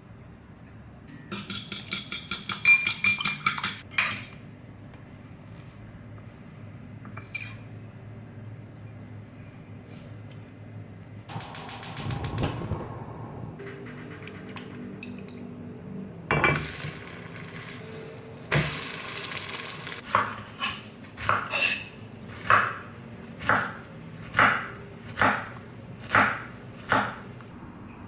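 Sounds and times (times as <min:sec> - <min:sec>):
rushing noise: 0:11.3 - 0:19.2.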